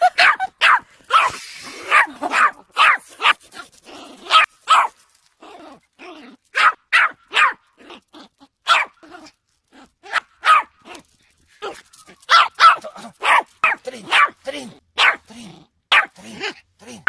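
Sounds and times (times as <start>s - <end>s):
dog barking: 0.0s - 3.4s, 4.3s - 5.0s, 6.5s - 7.6s, 8.6s - 9.0s, 10.1s - 10.8s, 11.6s - 17.0s.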